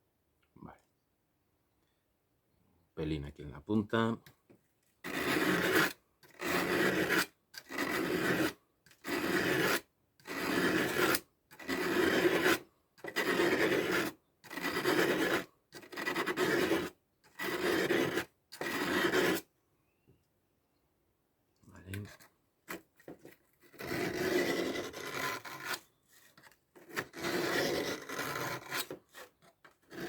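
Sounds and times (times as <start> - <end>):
knife blade rasping on sharpener: 5.1 - 19.4, 23.8 - 30.0.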